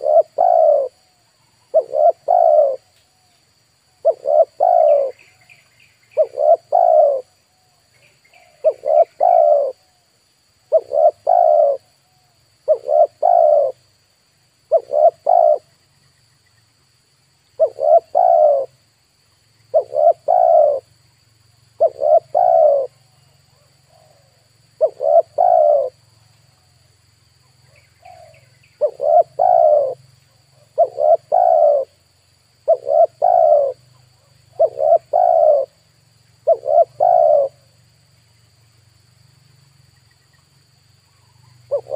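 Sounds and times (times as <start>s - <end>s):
dove cooing: 0.0s - 2.9s, 4.0s - 5.5s, 6.2s - 7.7s, 8.4s - 10.0s, 10.6s - 11.9s, 12.6s - 13.8s, 14.7s - 15.7s, 17.6s - 18.8s, 19.7s - 20.9s, 21.8s - 26.0s, 27.7s - 32.0s, 32.6s - 35.8s, 36.4s - 37.8s, 41.1s - 41.9s
small bird chirping: 0.0s - 41.9s.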